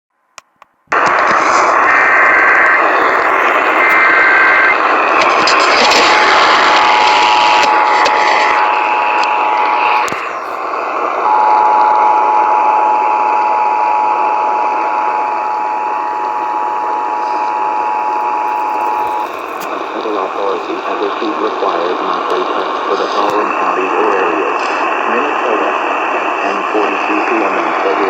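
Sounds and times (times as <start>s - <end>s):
radio static hiss: 0.9s - 28.0s.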